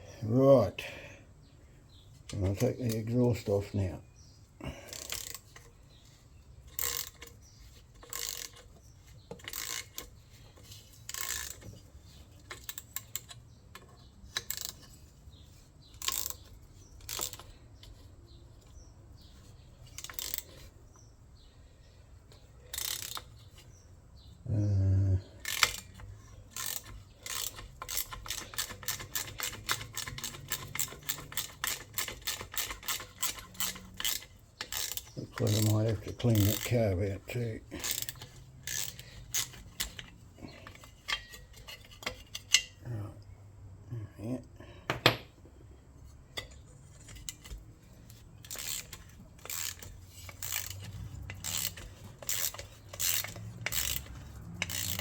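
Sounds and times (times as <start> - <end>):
socket wrench ratcheting: 4.8 - 15.1, 15.9 - 18.0, 19.8 - 21.1, 22.7 - 23.7, 25.4 - 42.8, 46.4 - 55.0
tool knocks: 44.9 - 45.3.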